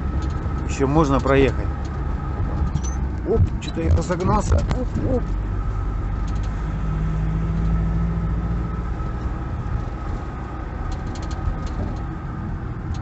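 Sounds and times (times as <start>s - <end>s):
van engine and road rumble: 0.0s - 13.0s.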